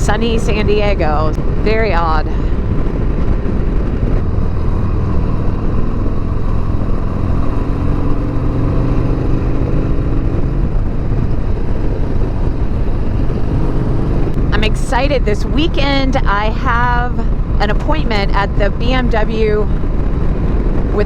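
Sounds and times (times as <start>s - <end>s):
motorcycle engine running: 0.0s - 21.0s
road noise: 0.0s - 21.0s
wind noise: 0.0s - 21.0s.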